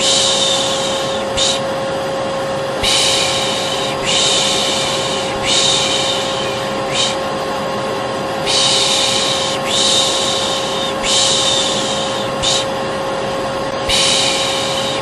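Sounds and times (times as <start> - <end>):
person shushing: 0.0 - 1.8, 2.8 - 7.3, 8.4 - 12.8, 13.8 - 15.0
vacuum cleaner humming: 0.0 - 15.0.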